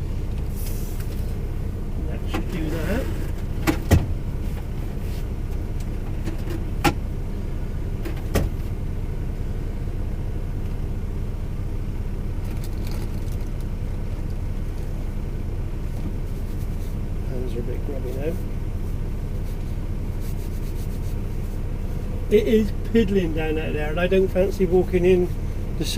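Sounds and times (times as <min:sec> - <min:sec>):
truck engine idling: 0:00.0 - 0:25.9.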